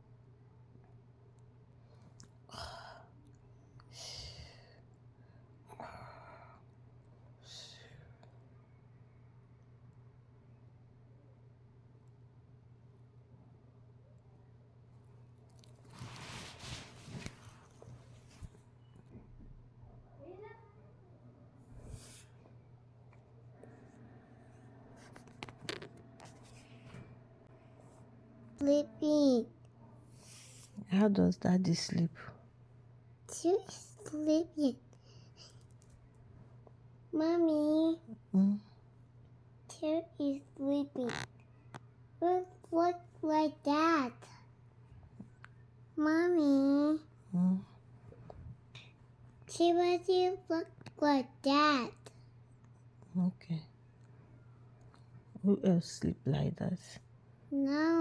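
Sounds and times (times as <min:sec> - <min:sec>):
steady low hum: 0:00.0 - 0:58.0
faint rustles: 0:15.5 - 0:19.3.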